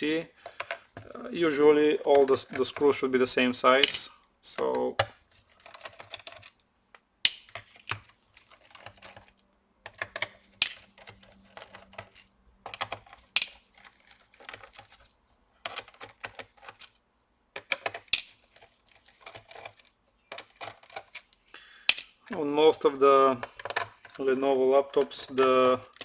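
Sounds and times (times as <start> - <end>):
small metal screws dropped: 3.8 - 4.1.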